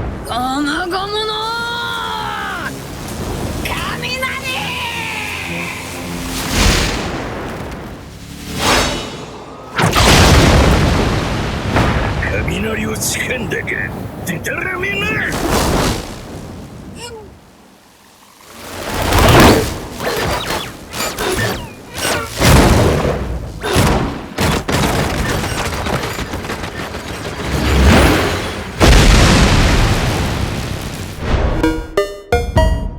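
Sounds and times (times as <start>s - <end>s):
thunder booms and rumbling blasts: 9.7s - 13.1s, 22.4s - 31.6s
background music: 31.4s - 32.9s.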